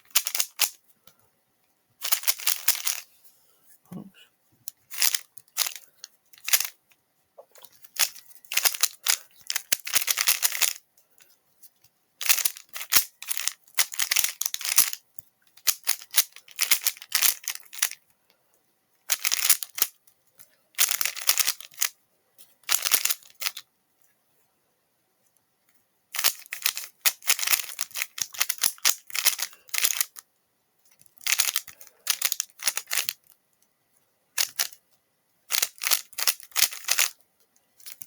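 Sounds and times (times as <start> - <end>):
plastic puzzle cube clacking: 0.1 - 0.8, 2.0 - 3.0, 4.7 - 6.8, 7.6 - 10.8, 12.2 - 15.0, 15.6 - 18.0, 19.1 - 20.0, 20.8 - 21.9, 22.6 - 23.6, 26.2 - 30.2, 31.0 - 33.3, 34.4 - 34.8, 35.5 - 37.2.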